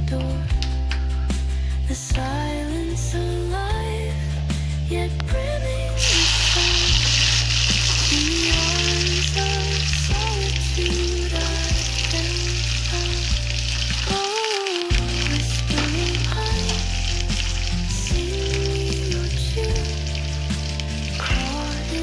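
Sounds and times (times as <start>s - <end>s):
background music: 0.0s - 22.0s
food sizzling in hot oil: 6.0s - 22.0s.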